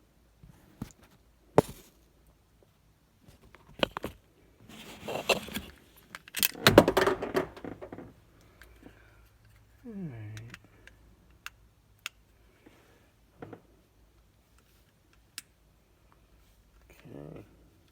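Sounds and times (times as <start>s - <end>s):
screwdriver clicking and scraping: 4.8s - 6.5s.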